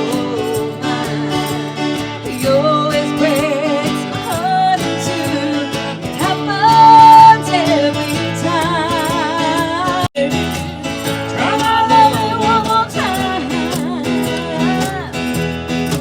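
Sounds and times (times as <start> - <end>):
rock-country band playing: 0.0 - 16.0.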